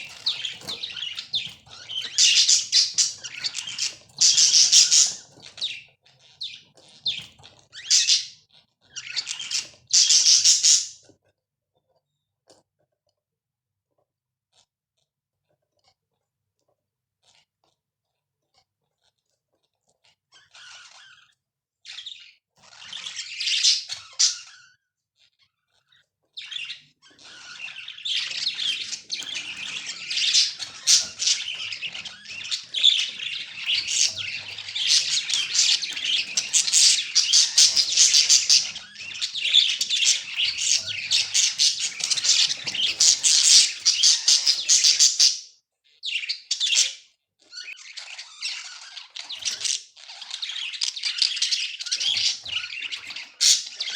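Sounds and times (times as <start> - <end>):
budgerigar chirping and warbling: 0.0 - 11.0, 20.3 - 21.3, 21.9 - 24.8, 25.7 - 53.9.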